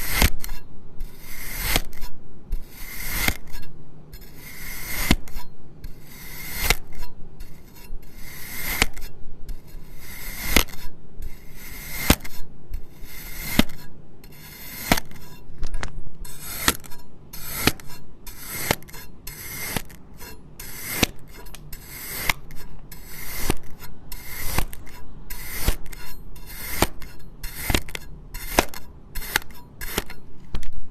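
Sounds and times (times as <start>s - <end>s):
blade scraping through sand: 0.0s - 3.6s, 4.2s - 15.5s, 16.2s - 30.3s.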